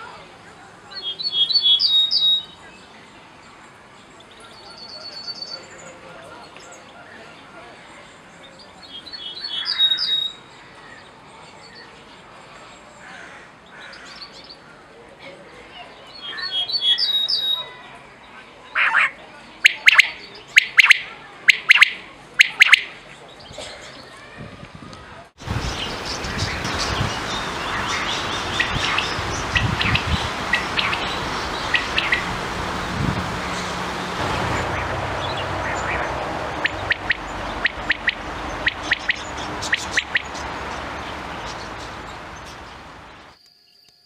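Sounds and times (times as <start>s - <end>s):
wind rushing: 25.4s - 43.3s
leaves rustling: 25.4s - 43.4s
quail chirping: 25.8s - 43.2s.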